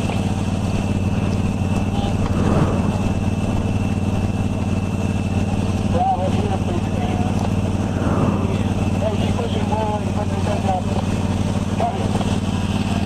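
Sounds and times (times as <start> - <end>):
engine idling hum: 0.0 - 13.0
faint high whine: 6.4 - 10.4.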